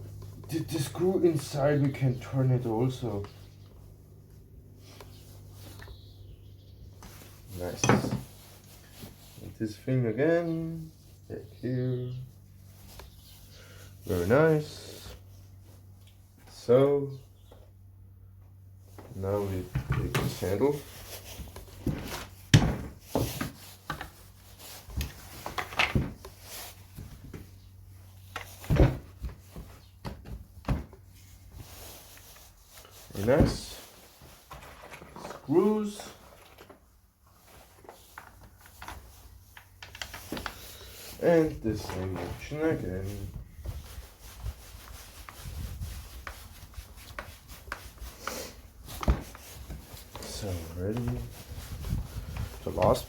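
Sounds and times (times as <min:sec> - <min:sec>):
scraping and rubbing: 0:40.2 - 0:53.0.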